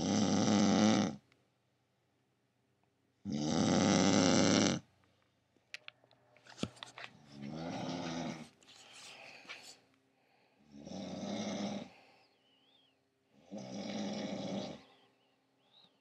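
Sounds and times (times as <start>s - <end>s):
woman snoring: 0.0s - 1.2s, 3.3s - 4.8s, 7.4s - 8.5s, 10.6s - 12.1s, 13.4s - 15.0s.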